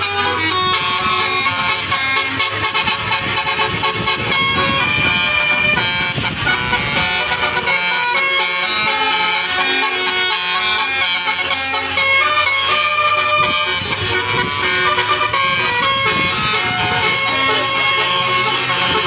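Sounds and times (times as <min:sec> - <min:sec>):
musical air horns playing a tune: 0:00.0 - 0:19.0.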